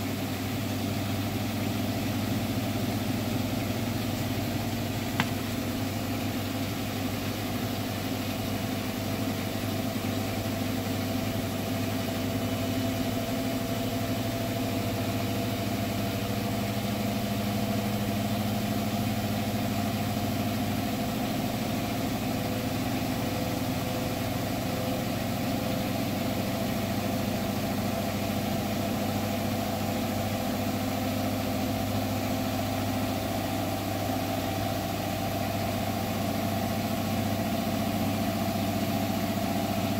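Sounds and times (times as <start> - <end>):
washing machine spinning: 0.0 - 39.9
knocking inside washing machine: 4.0 - 5.7.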